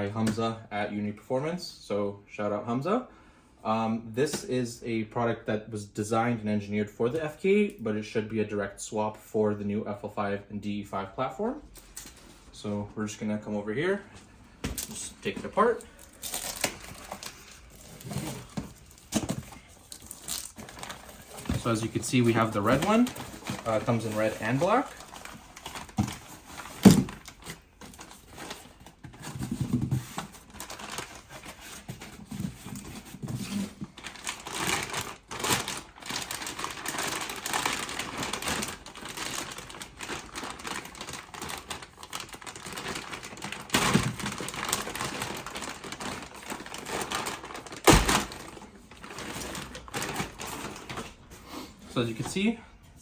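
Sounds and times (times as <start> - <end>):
packaging rustling and crinkling: 14.7 - 51.4.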